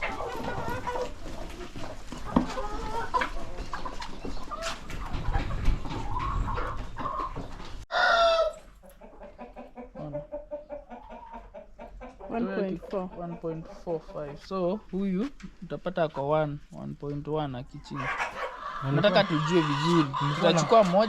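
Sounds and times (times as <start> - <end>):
chickens clucking: 0.0 - 21.0
loud chicken call: 7.9 - 8.8.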